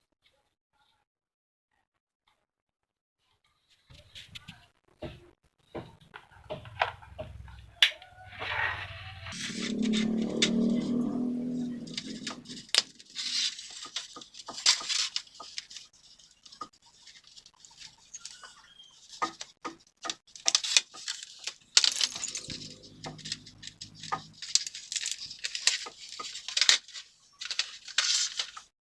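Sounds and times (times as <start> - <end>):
small hard objects clicking: 19.2 - 26.8.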